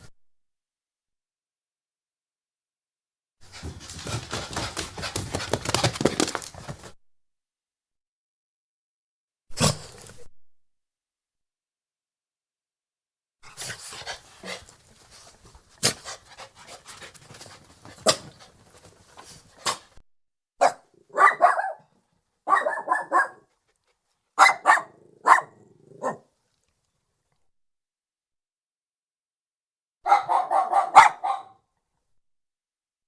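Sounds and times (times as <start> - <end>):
small dog barking: 20.6 - 23.5, 24.4 - 26.3, 30.0 - 31.6.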